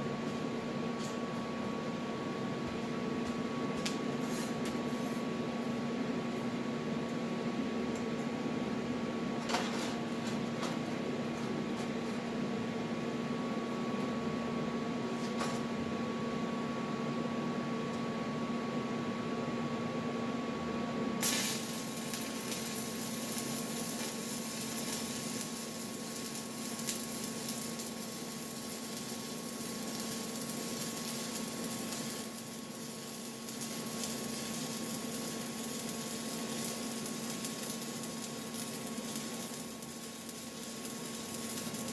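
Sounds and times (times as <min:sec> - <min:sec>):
welding arc hissing crackle: 0:21.2 - 0:41.9.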